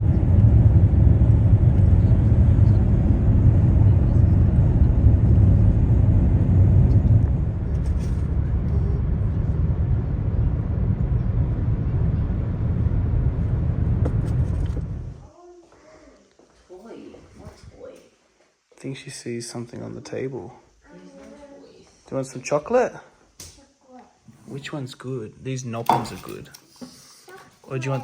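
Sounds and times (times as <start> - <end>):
car driving low rumble: 0.0 - 15.3.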